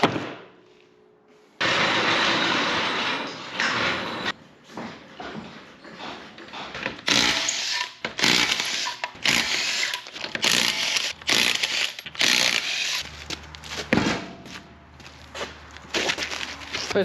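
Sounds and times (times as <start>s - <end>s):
power tool running: 7.1s - 13.1s.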